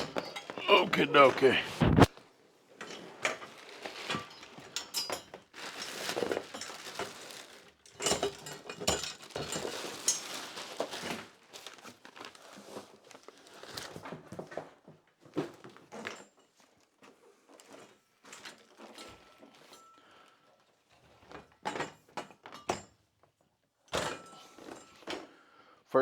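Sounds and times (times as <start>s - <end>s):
packaging rustling and crinkling: 3.5s - 14.6s.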